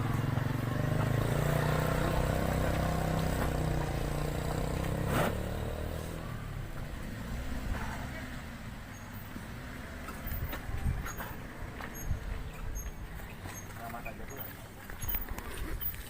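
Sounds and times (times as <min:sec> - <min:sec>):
motorcycle engine running: 0:00.0 - 0:07.0.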